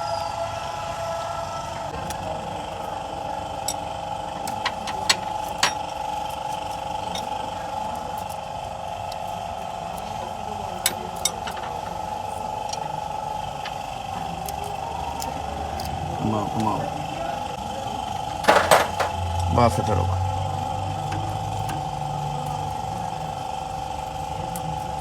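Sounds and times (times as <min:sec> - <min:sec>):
steady mechanical hum: 0:00.0 - 0:25.0
hand tools clicking on metal: 0:04.5 - 0:06.0, 0:10.8 - 0:11.8.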